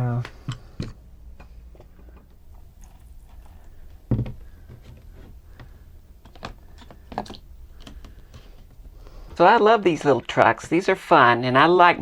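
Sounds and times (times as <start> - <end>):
plastic parts clicking and tapping: 0.2 - 9.0.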